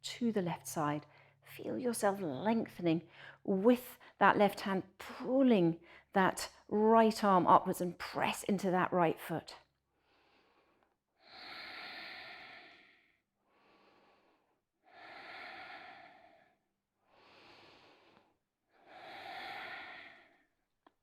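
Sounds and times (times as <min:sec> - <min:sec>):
woman breathing deeply: 0:10.0 - 0:20.6.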